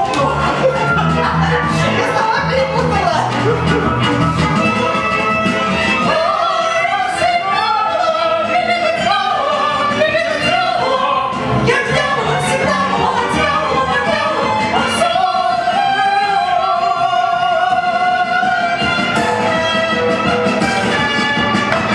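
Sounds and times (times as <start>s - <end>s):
instrumental accompaniment: 0.0s - 13.8s, 18.7s - 21.9s
woman singing with vibrato: 5.9s - 18.9s.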